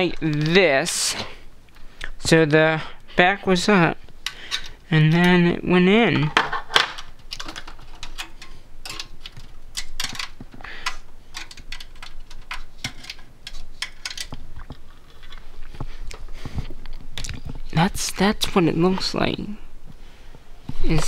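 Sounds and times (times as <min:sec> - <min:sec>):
cable and plug being handled: 0:06.2 - 0:17.6.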